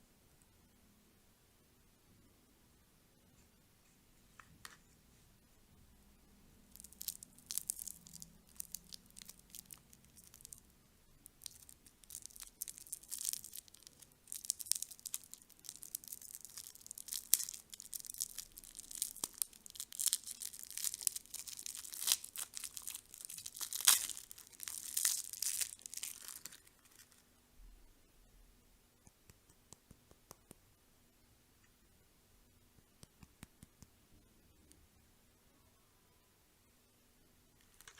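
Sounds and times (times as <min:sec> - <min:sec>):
candy wrapper crinkling: 0:06.7 - 0:27.3, 0:37.6 - 0:37.9.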